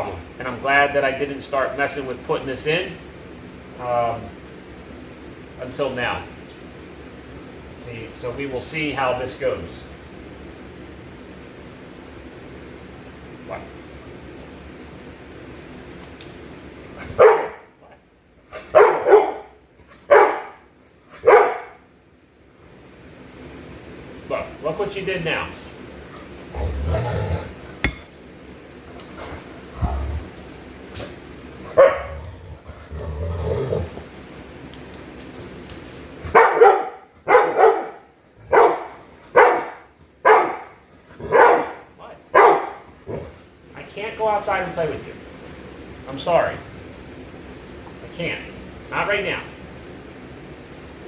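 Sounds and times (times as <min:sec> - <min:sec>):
dog barking: 0:17.1 - 0:17.7, 0:18.6 - 0:20.6, 0:21.2 - 0:21.8, 0:31.7 - 0:32.2, 0:36.3 - 0:42.9.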